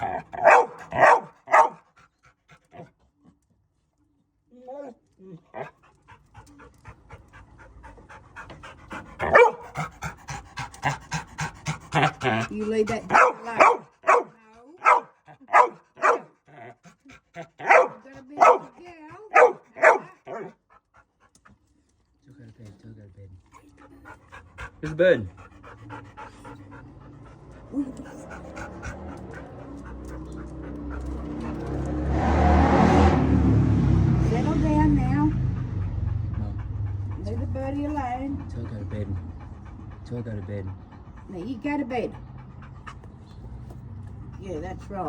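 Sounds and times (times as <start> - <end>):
high-pitched dog sound: 0.0 - 1.8, 9.2 - 9.8, 17.6 - 20.6
dog panting rapidly: 0.0 - 3.0, 5.6 - 21.7, 23.4 - 32.1, 34.3 - 45.0.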